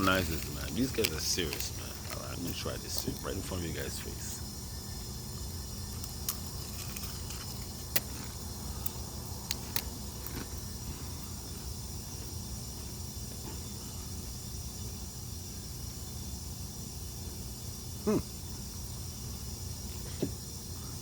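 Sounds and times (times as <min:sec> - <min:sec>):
chips being bitten: 0:00.0 - 0:03.6, 0:05.8 - 0:12.4
chip bag crackling: 0:00.0 - 0:04.0, 0:05.8 - 0:08.9, 0:09.5 - 0:11.0
steady low hum: 0:00.0 - 0:21.0.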